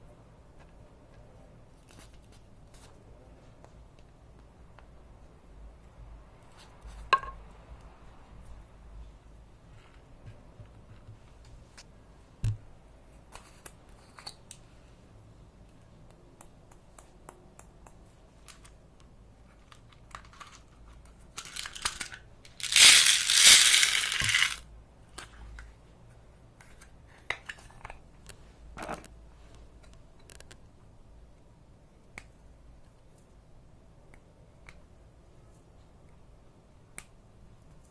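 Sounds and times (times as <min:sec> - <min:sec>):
crinkling rustling: 0:19.6 - 0:24.6.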